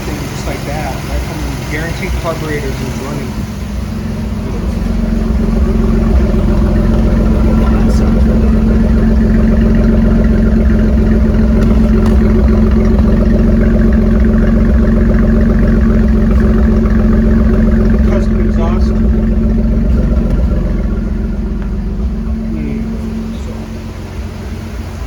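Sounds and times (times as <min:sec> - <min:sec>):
pickup engine running: 0:00.0 - 0:25.0.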